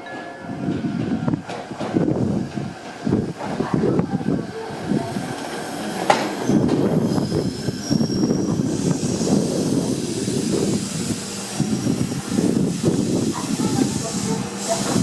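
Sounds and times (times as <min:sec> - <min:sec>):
electric train rumbling past: 0:00.0 - 0:15.0
faint high wheel squeal: 0:06.4 - 0:09.2.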